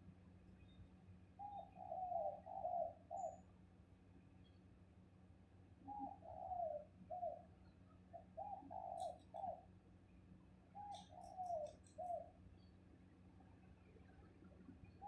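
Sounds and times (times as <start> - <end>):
dove cooing: 1.4 - 3.4, 5.9 - 7.5, 8.1 - 9.7, 10.8 - 12.3
small bird chirps: 5.9 - 9.7, 10.6 - 12.8.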